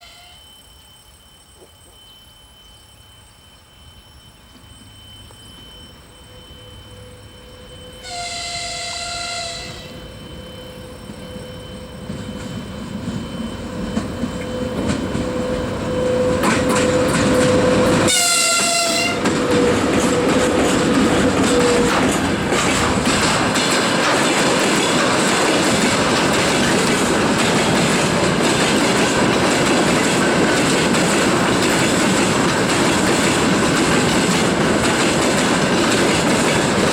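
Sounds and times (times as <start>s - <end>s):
locomotive horn: 0.0s - 0.5s, 7.9s - 10.2s, 15.8s - 20.5s
train rolling over rails: 3.4s - 36.9s.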